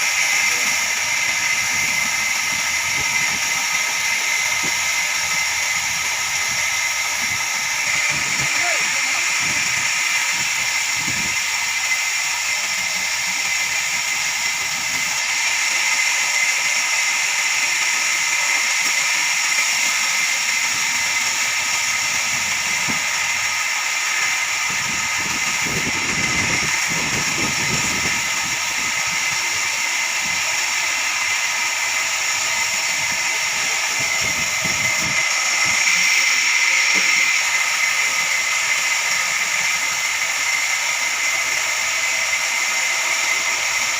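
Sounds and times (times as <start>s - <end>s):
band saw cutting log: 0.0s - 43.9s.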